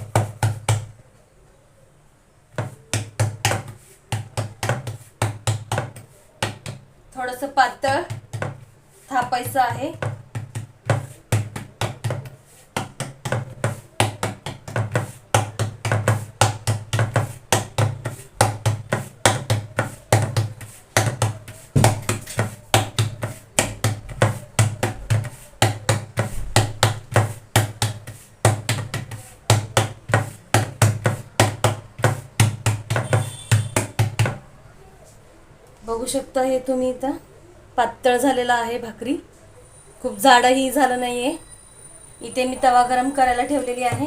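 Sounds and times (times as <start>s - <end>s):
hands slapping dough flat: 0.0s - 1.0s, 2.5s - 6.9s, 7.7s - 34.5s, 43.6s - 44.0s.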